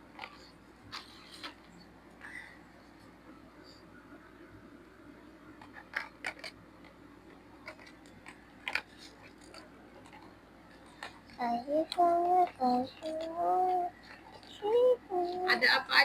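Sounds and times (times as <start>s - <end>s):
plastic toy pieces clicking: 5.6s - 6.6s.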